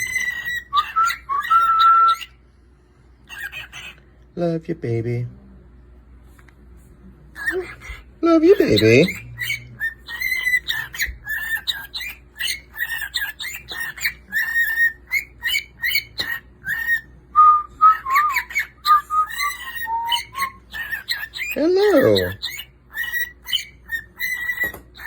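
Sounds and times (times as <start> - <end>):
cockatiel chirping: 0.0 - 2.4, 3.2 - 4.0, 7.4 - 17.1, 17.8 - 25.0
cockatiel whistling: 0.0 - 2.4, 8.6 - 25.0.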